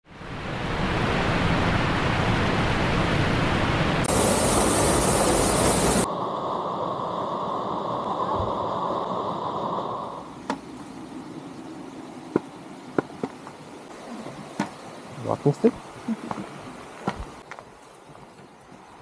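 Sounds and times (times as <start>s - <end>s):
waterfall rushing: 0.2s - 6.3s.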